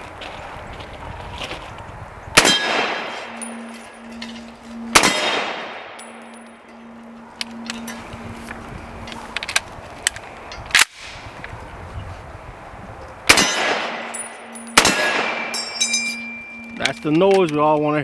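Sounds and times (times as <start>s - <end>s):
rifle shots: 2.4s - 3.4s, 4.9s - 6.0s, 13.3s - 14.2s, 14.8s - 15.6s
metallic clangs of steel targets: 2.4s - 8.3s, 13.3s - 17.6s.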